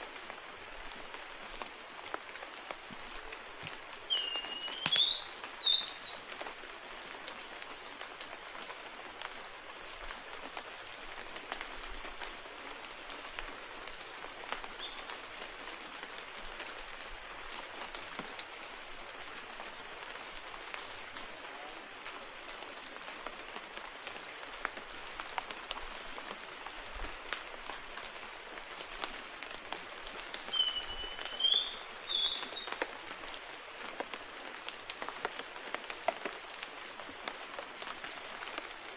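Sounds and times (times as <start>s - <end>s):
rain pattering on leaves: 0.0s - 38.9s
bird rising whistles: 4.1s - 6.2s, 30.5s - 32.8s.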